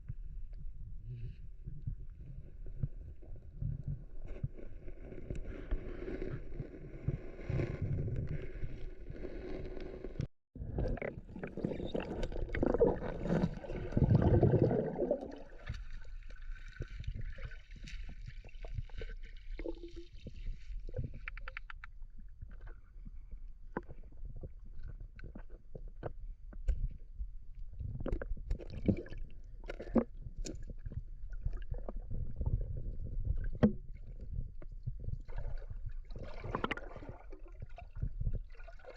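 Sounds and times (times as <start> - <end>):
water sloshing and splashing: 10.6 - 21.6, 35.2 - 38.9.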